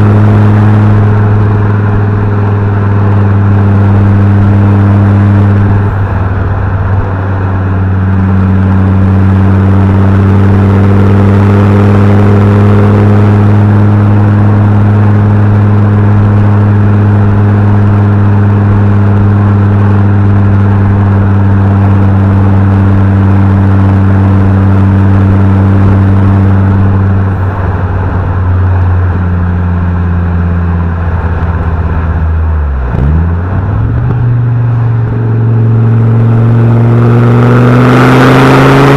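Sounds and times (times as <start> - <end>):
car engine and exhaust: 0.0 - 38.9.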